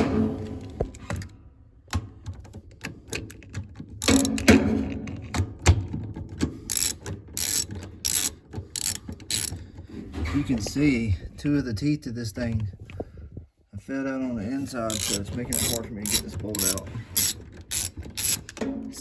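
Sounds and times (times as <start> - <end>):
ratchet clicks: 2.4 - 4.6, 6.6 - 9.8, 14.8 - 18.7.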